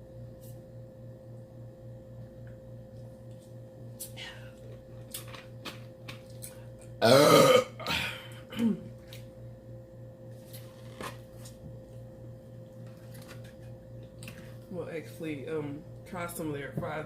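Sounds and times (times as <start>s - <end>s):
person burping: 7.0s - 8.9s.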